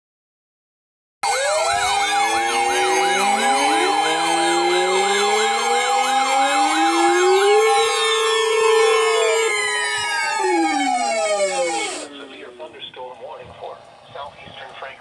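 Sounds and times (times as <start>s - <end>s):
electronic alarm sirens: 1.2s - 13.0s.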